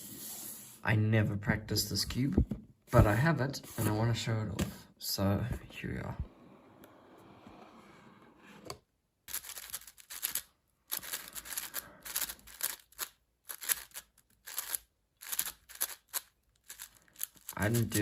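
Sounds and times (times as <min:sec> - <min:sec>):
plastic puzzle cube being turned: 0:09.3 - 0:18.0.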